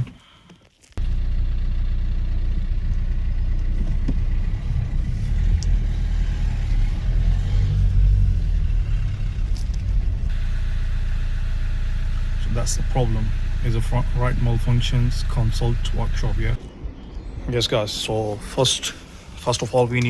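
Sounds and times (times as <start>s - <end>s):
diesel engine idling: 1.0s - 16.8s.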